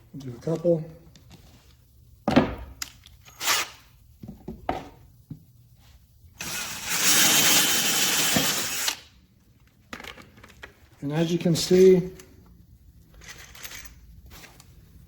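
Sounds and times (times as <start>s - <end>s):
power drill boring into board: 6.4s - 9.0s.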